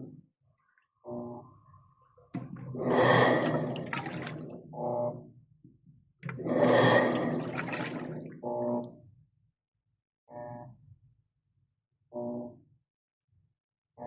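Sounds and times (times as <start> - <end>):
washing machine motor hum: 2.4 - 4.6, 6.2 - 8.8
water churning and splashing: 2.4 - 4.7, 6.2 - 8.8.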